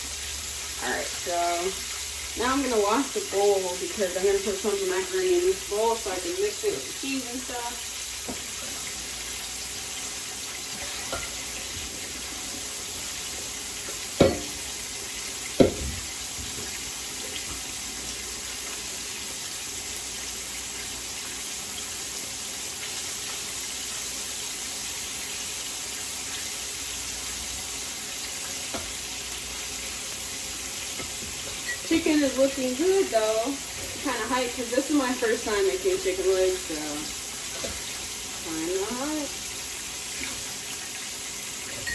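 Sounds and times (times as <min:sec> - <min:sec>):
tap running into sink: 0:08.2 - 0:08.9, 0:13.4 - 0:14.8, 0:15.4 - 0:17.7, 0:28.6 - 0:29.0
bowl knocking against sink: 0:14.2 - 0:14.6, 0:15.6 - 0:16.7.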